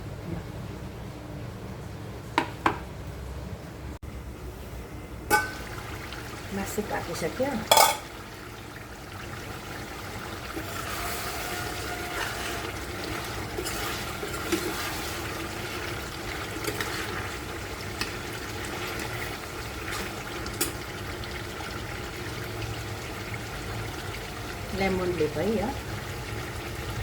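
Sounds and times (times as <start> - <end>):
curry simmering in a pot: 5.4 - 27.0.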